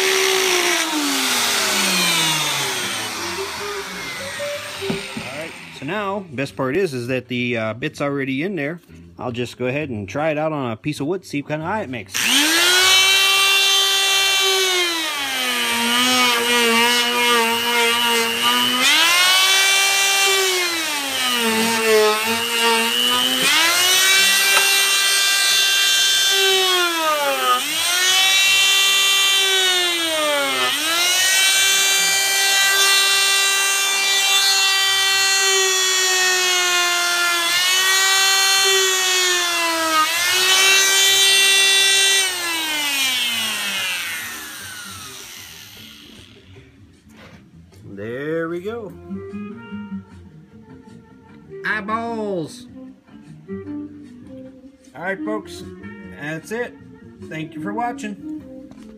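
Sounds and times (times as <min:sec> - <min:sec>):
die grinder whining against wood: 0:00.0 - 0:06.3, 0:12.1 - 0:46.5.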